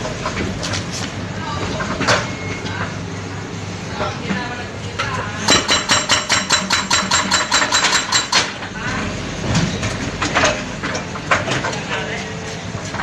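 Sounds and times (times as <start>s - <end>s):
excavator metallic clanking: 5.4s - 8.8s.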